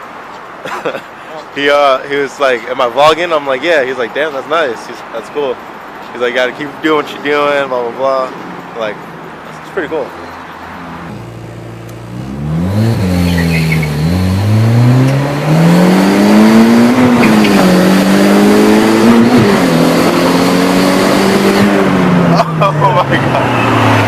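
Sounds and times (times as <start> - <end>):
road and tire noise: 0.0 - 24.0
car engine accelerating: 10.6 - 24.0.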